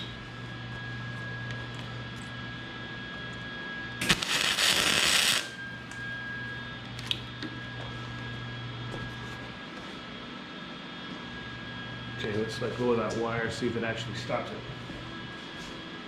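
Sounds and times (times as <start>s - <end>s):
electrical hum: 0.0s - 16.0s
welding hiss: 4.0s - 5.6s.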